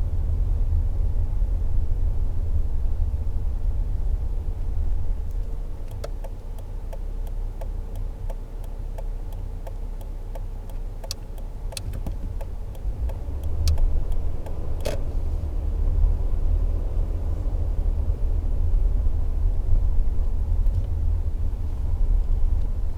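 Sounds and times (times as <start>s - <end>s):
pickup truck rumble from inside cab: 0.0s - 22.9s
light ticks: 4.6s - 15.0s
sharp click: 7.6s - 14.2s.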